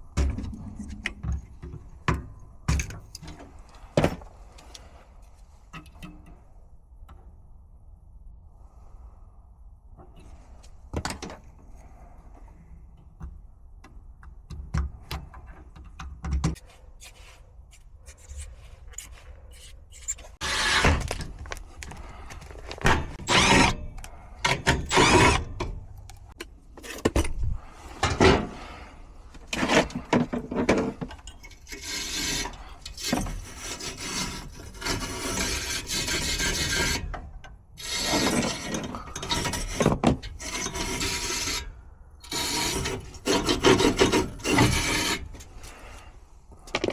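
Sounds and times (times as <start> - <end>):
rubbing or scraping strokes: 16.6 - 25.6, 37.8 - 46.2.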